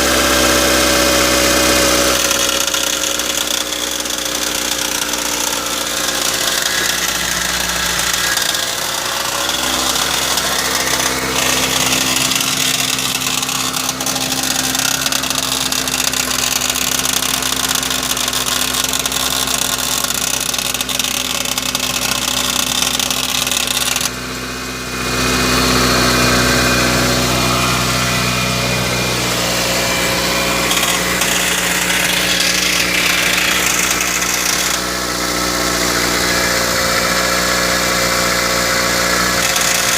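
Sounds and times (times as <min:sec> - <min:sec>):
car engine running: 0:00.0 - 0:39.9
steady tones over engine: 0:24.3 - 0:39.0.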